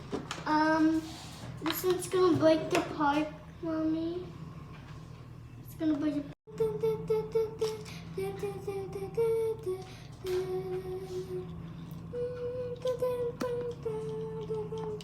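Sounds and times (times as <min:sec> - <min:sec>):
person humming: 0:12.1 - 0:15.0.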